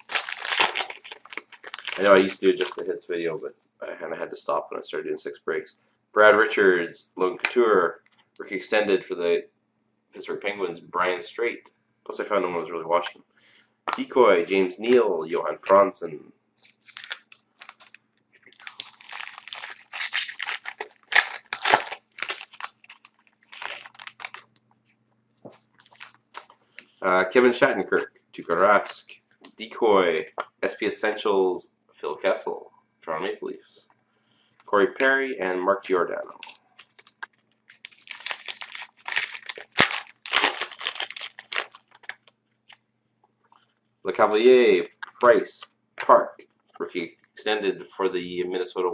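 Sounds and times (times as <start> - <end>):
foil wrapper crinkling and tearing: 0.0 - 2.9, 16.8 - 24.6, 25.7 - 26.5, 36.4 - 42.4.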